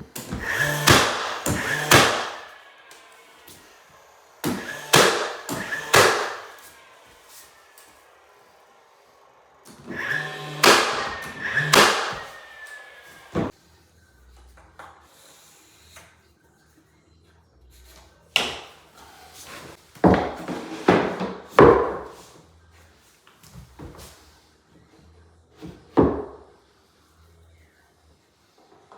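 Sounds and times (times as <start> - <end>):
boards knocking and clattering: 4.5 - 6.5, 10.1 - 12.4.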